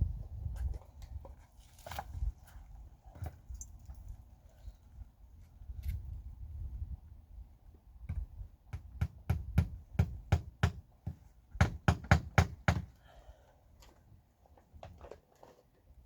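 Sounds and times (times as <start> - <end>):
hammer driving nails into wood: 8.8 - 12.9.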